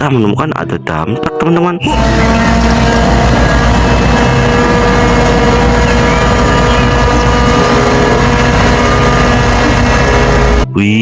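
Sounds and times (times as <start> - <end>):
dump truck engine rumbling: 1.9 - 10.7.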